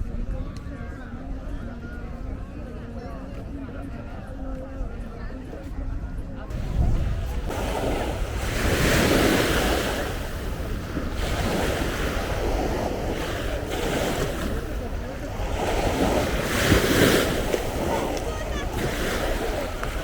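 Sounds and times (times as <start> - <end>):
sea waves breaking on beach: 6.5 - 20.0
wind buffeting microphone: 6.5 - 20.0.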